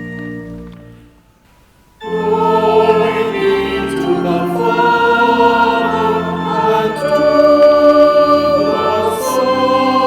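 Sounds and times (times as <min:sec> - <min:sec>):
choir holding a chord: 0:02.0 - 0:10.0.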